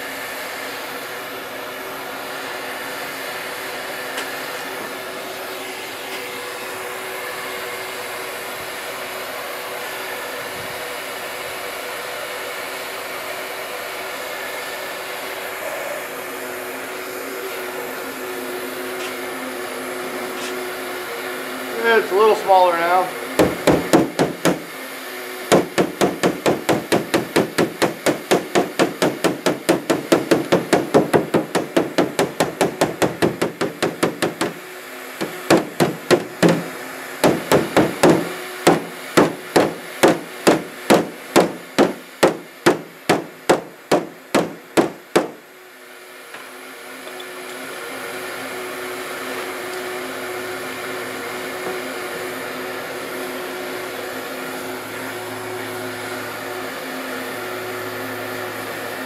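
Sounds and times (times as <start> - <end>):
heat gun blowing hum: 0.0 - 59.0
hammer tapping metal panel: 23.4 - 24.7, 25.5 - 34.6, 35.2 - 45.4.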